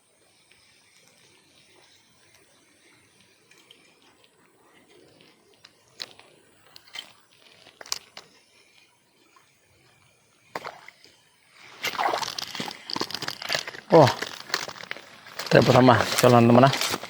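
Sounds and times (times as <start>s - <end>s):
faint ticks: 0.4s - 10.2s
water splashing and sloshing: 3.2s - 17.0s.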